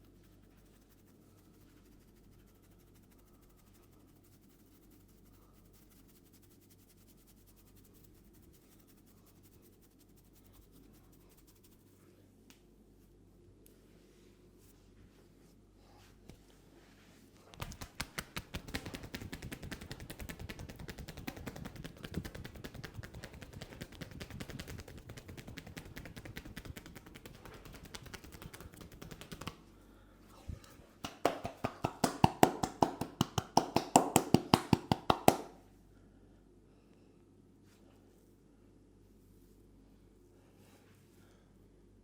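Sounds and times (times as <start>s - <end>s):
hand slaps: 17.5s - 29.6s, 31.0s - 35.6s
quick light hand tapping: 17.6s - 29.6s, 31.0s - 35.6s.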